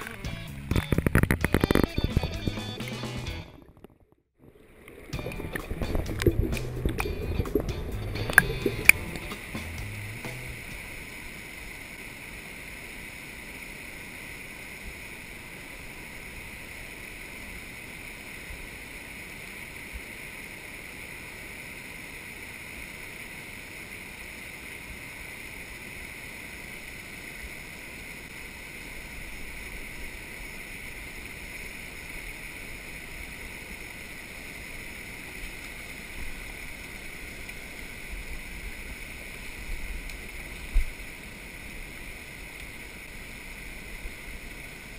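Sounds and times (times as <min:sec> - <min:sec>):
creek water over rocks: 0:00.0 - 0:44.9
low bumps: 0:05.1 - 0:10.8.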